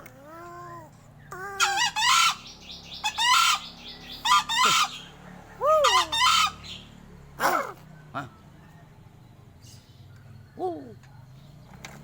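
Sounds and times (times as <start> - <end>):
crow harsh calls: 1.6 - 7.7.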